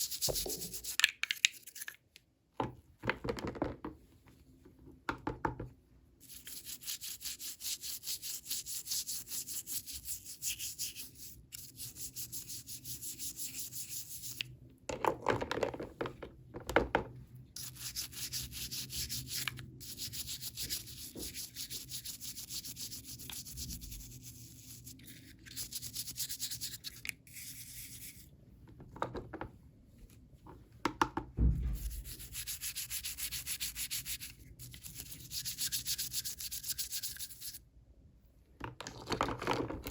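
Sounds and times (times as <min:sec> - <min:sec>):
knocks and handling sounds: 0:00.3 - 0:05.8, 0:14.9 - 0:17.2, 0:28.6 - 0:32.2, 0:38.6 - 0:39.9
fine scratching on packaging: 0:06.2 - 0:14.4, 0:17.6 - 0:28.3, 0:32.1 - 0:37.6.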